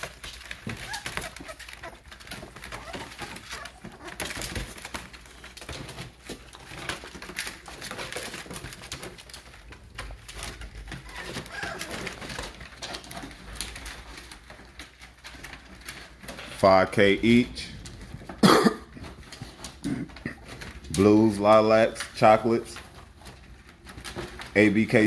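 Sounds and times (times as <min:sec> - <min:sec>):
puppies whimpering and squeaking: 0:00.0 - 0:16.4.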